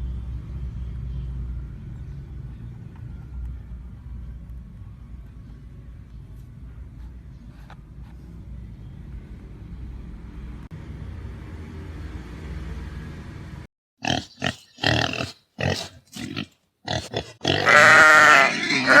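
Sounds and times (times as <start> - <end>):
pig grunting: 14.0 - 19.0
pig squealing loudly: 14.0 - 19.0.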